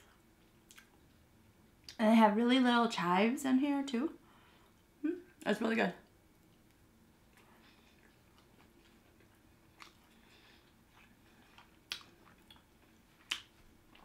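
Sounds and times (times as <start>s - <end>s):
person chewing wet mouth sounds: 0.6s - 1.0s, 6.4s - 14.0s.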